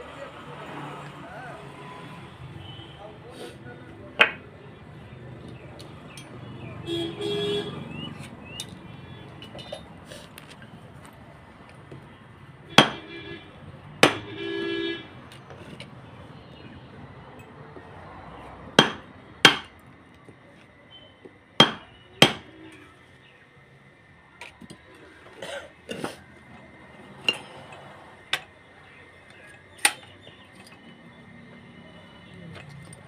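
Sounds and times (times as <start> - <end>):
hammer striking wood: 4.2 - 4.4, 12.8 - 13.1, 14.0 - 14.4, 18.7 - 19.8, 21.6 - 22.5.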